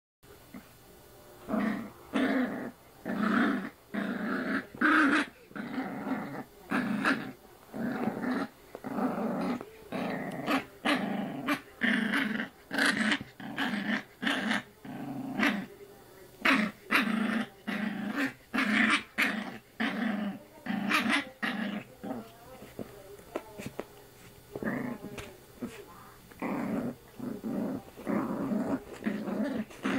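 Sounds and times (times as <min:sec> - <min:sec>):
puppy growling: 0:01.4 - 0:15.8, 0:16.4 - 0:29.9.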